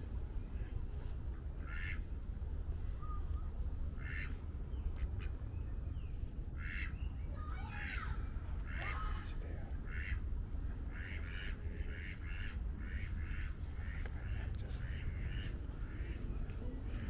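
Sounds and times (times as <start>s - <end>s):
steady low rumble: 0.0s - 17.0s
ducks quacking: 1.6s - 2.0s, 3.9s - 5.4s, 6.6s - 7.0s, 7.7s - 17.0s.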